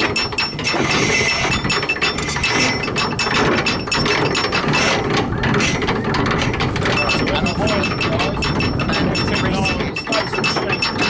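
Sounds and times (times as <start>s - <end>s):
winch ratchet clicking: 0.0s - 11.0s.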